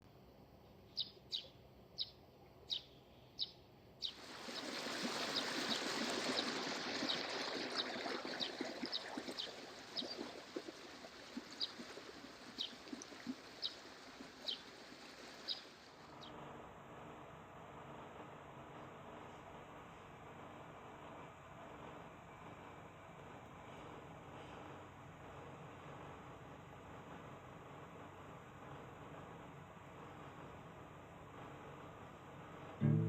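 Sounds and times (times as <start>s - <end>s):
bird chirping: 0.8s - 10.2s, 15.4s - 16.3s
water rushing: 4.1s - 16.1s.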